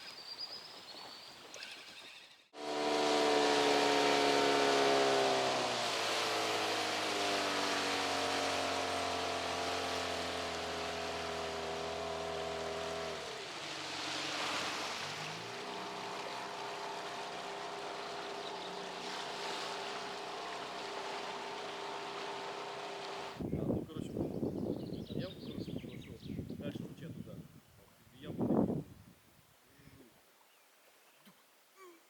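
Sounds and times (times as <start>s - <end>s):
rush of water: 2.6s - 23.5s
outboard motor running: 2.6s - 25.1s.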